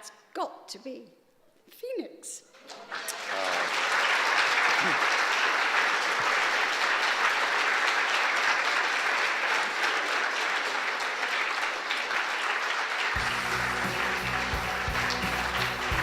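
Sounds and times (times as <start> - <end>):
audience applauding: 2.6 - 16.0
music with low sustained notes: 13.2 - 16.0.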